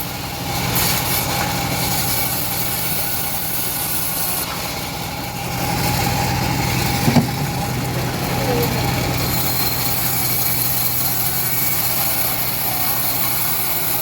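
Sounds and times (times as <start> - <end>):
bandsaw whine: 0.0 - 14.0
engine humming: 4.4 - 14.0.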